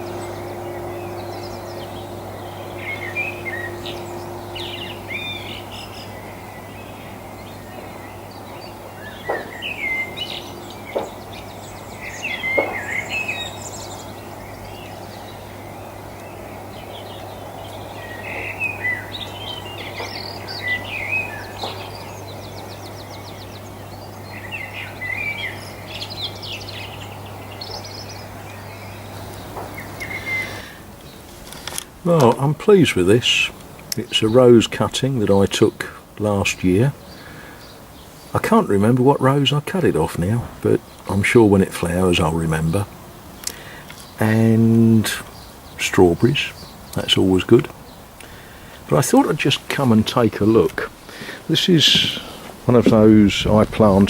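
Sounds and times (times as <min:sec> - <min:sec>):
songbirds twittering: 0:00.0 - 0:54.0.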